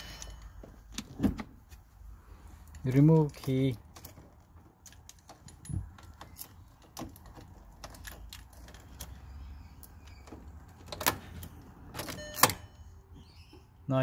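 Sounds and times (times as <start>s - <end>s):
car key clicking and jingling: 10.1s - 12.8s.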